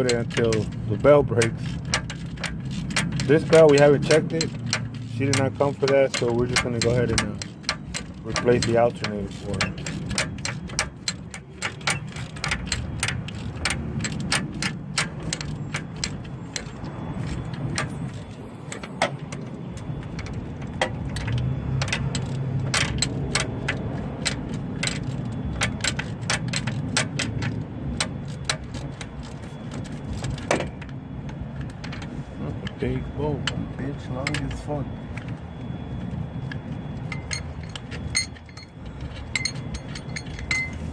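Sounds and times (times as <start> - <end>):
ratchet wrench clicking: 0.0 - 30.9, 37.0 - 40.9
low steady rumble: 0.0 - 40.9.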